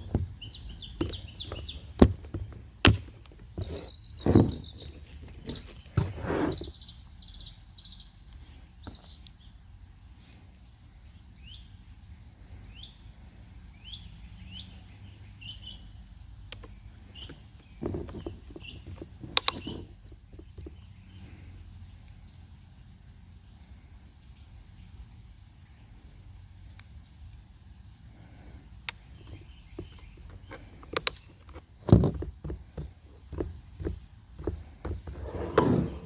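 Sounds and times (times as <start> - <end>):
small bird chirping: 0.0 - 9.6, 13.7 - 21.8, 28.9 - 36.0
knocking and clattering: 29.2 - 36.0.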